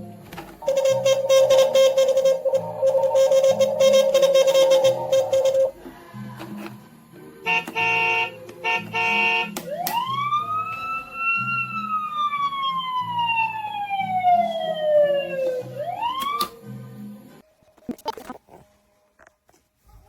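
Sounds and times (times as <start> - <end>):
electronic siren wail: 0.6 - 5.7, 9.7 - 16.5.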